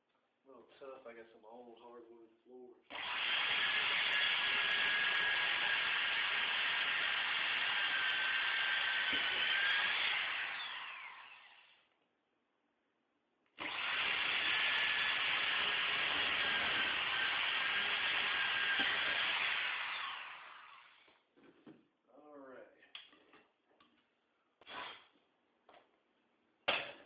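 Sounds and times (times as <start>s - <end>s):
electric drill boring into wood: 2.9s - 11.9s, 13.6s - 21.2s.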